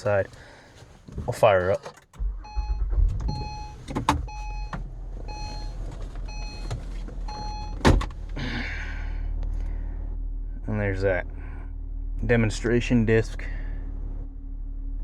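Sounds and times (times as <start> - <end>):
car engine starting and idling: 0.0 - 15.0
dashboard warning chime: 2.2 - 8.2.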